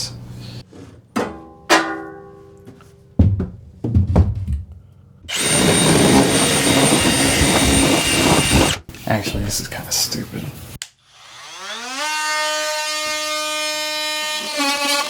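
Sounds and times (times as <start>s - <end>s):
dull thumps: 2.7s - 9.6s
power drill whining: 5.3s - 8.9s, 11.1s - 15.0s.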